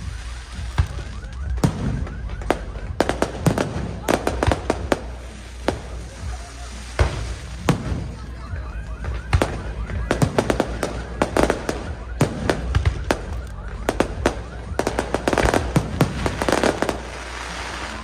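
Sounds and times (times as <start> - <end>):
fireworks bangs: 0.0 - 18.0.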